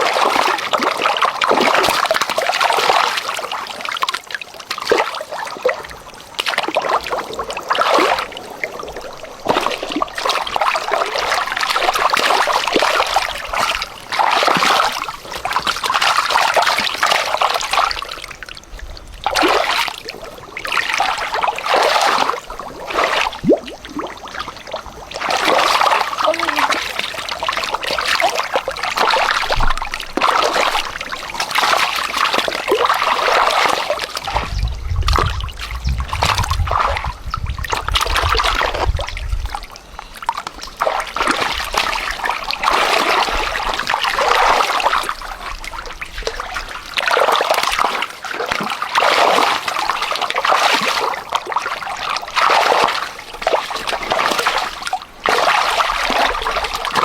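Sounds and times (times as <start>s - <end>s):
water splashing and trickling: 0.0s - 57.0s
low rumble: 34.3s - 39.5s.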